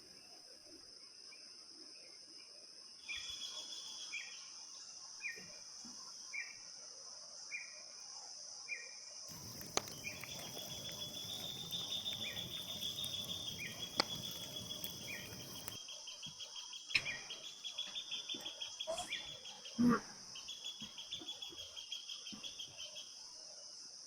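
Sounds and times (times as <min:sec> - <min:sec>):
insect trill: 0:09.3 - 0:22.3.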